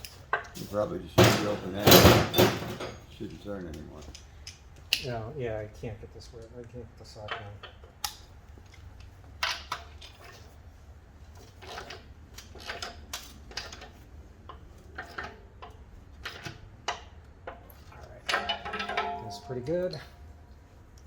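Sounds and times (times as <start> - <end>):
low steady hum: 5.4 - 21.0.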